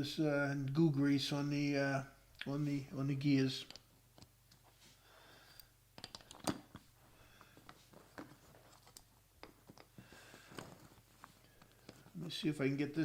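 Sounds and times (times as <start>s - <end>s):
clicks of small parts handled: 3.6s - 4.6s, 5.5s - 6.9s, 7.6s - 12.2s.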